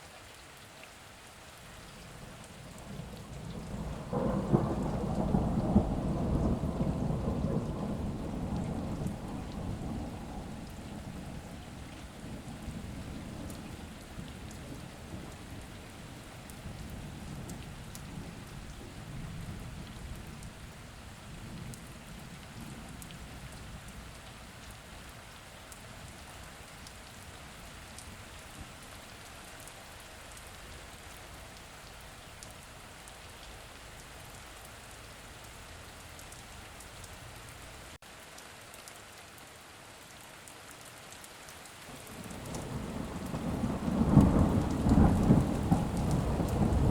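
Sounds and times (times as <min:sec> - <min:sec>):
steady rain falling: 0:00.0 - 0:46.9
raindrops tapping: 0:02.0 - 0:38.0, 0:41.9 - 0:46.9
distant thunder rumble: 0:02.6 - 0:24.2, 0:42.1 - 0:46.9.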